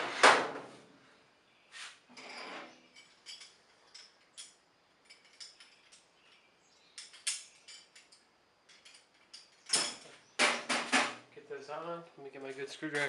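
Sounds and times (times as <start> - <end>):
metal hardware clinking and rattling: 2.2 - 11.2.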